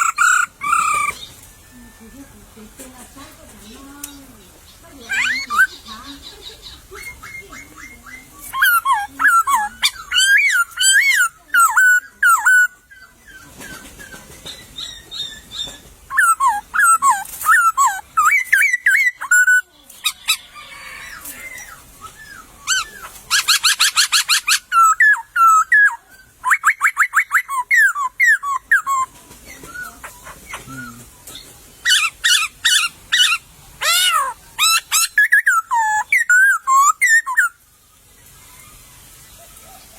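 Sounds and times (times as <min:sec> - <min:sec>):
bird whistling loud phrases: 0:05.0 - 0:12.9, 0:14.8 - 0:29.1, 0:31.8 - 0:37.6.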